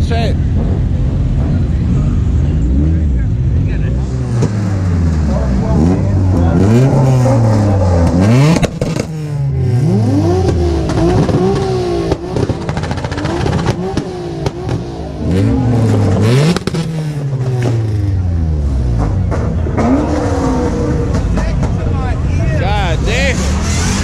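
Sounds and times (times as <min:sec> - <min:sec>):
car engine revving: 0:00.1 - 0:24.0
exhaust crackles: 0:00.4 - 0:24.0.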